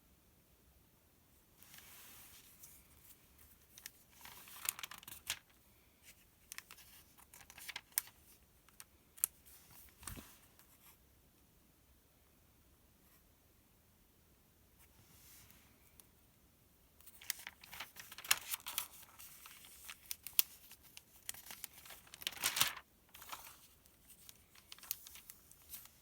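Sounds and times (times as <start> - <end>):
paper crinkling and rustling: 1.6 - 10.8, 17.0 - 26.0
paper pages swishing: 17.1 - 26.0.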